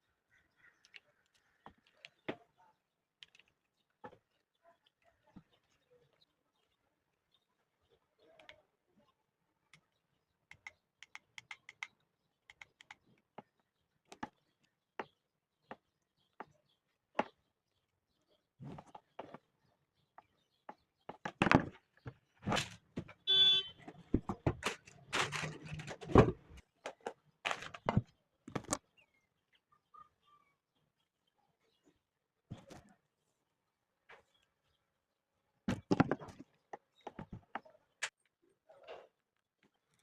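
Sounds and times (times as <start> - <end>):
knocks and rustling: 21.1 - 23.2, 23.8 - 28.8.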